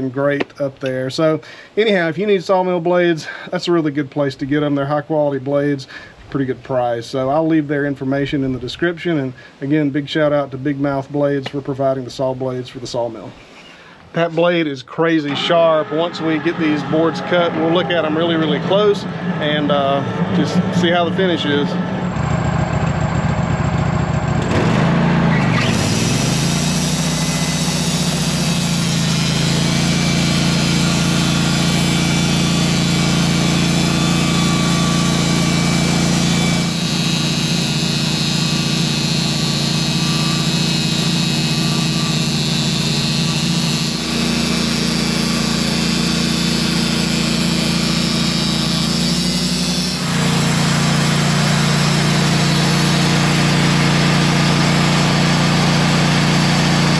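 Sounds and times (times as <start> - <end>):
band sawmill engine under load: 15.0 - 56.9.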